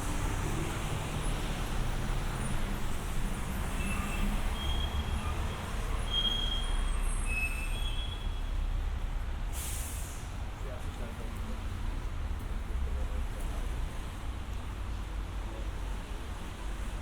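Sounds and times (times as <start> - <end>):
rumble of passing vehicles: 0.0 - 17.0
short high squeals: 6.0 - 8.4.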